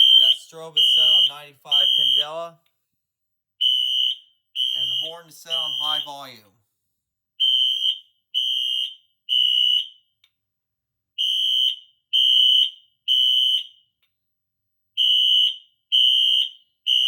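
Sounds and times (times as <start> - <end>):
fire alarm horn beeping: 0.0 - 2.5, 3.6 - 6.4, 7.4 - 10.0, 11.2 - 13.8, 15.0 - 17.0.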